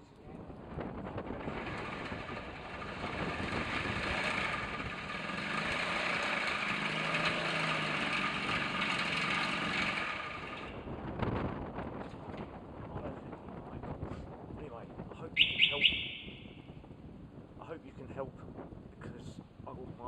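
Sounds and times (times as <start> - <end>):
scooter engine running: 0.8 - 11.0.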